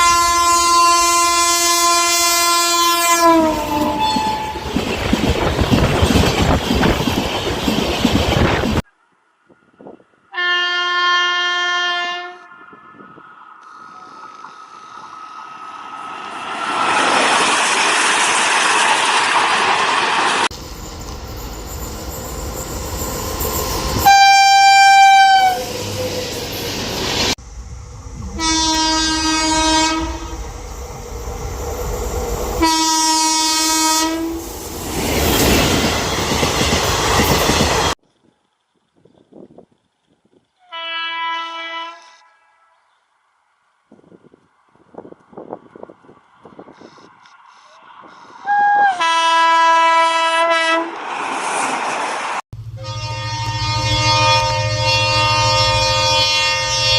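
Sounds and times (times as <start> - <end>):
train horn blasts: 0.0 - 4.7, 10.3 - 12.6, 24.0 - 26.0, 28.2 - 30.4, 32.6 - 34.4, 40.6 - 42.8, 48.9 - 51.0, 52.6 - 56.9
passing train rushing noise: 0.0 - 38.0, 43.2 - 56.9
train wheel clatter: 4.1 - 8.8.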